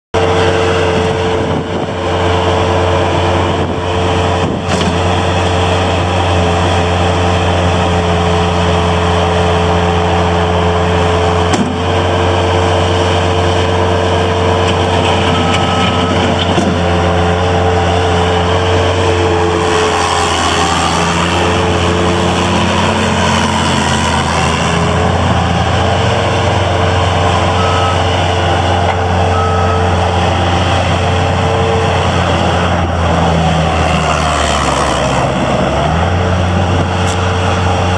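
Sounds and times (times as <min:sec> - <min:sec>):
diesel engine running: 0:00.2 - 0:37.9
short clunks: 0:11.5 - 0:11.8.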